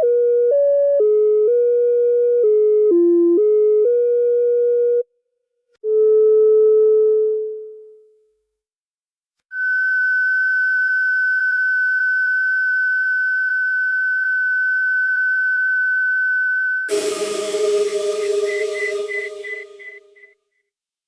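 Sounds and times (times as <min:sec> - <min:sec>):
rough machine hum with hiss: 0:16.9 - 0:20.1
machinery high-pitched whine: 0:16.9 - 0:20.2.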